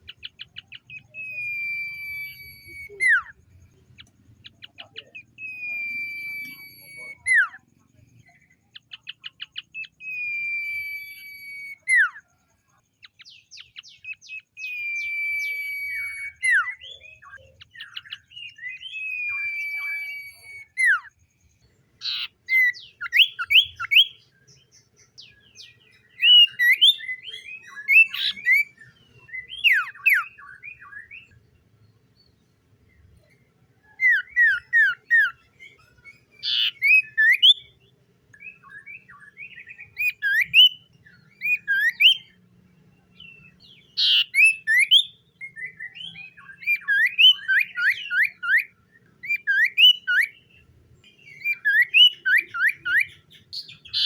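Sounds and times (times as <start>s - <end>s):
bird whistling and chirping: 0.0s - 12.3s, 13.0s - 21.4s, 22.0s - 31.5s, 32.2s - 54.0s.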